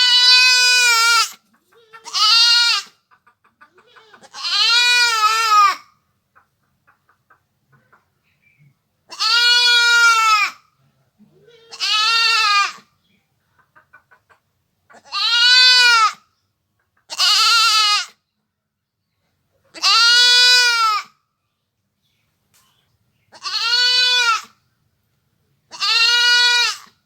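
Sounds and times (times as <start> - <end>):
goat bleating: 0.0 - 3.0, 3.7 - 6.0, 9.1 - 10.7, 11.3 - 12.9, 14.9 - 16.2, 17.1 - 18.2, 19.7 - 21.2, 23.3 - 24.6, 25.7 - 27.0.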